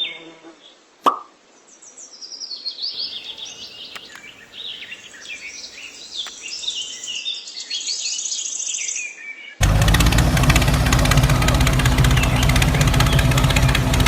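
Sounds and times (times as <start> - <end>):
birds chirping and singing: 2.7 - 9.2, 10.5 - 14.0
faint clicks: 3.0 - 7.1.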